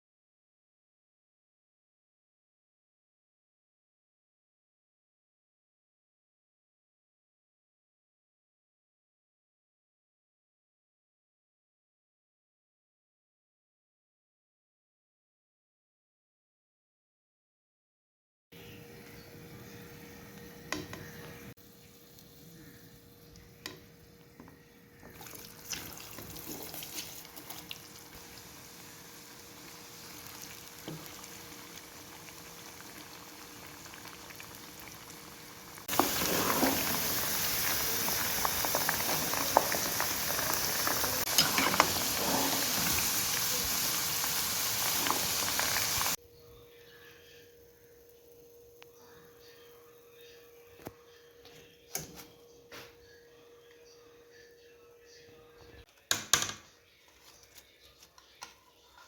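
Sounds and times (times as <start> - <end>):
food deep-frying in hot oil: 25.1 - 46.2.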